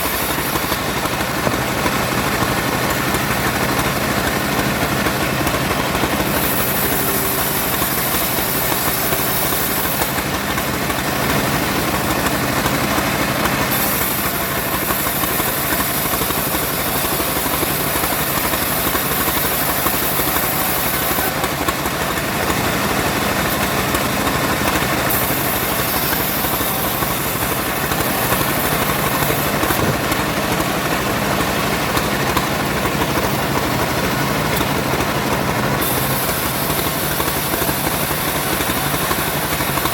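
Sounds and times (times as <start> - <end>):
high hiss of sawing: 0.0 - 1.0, 5.0 - 12.8, 13.4 - 31.4, 35.8 - 39.9
engine-driven wood saw: 0.0 - 39.9.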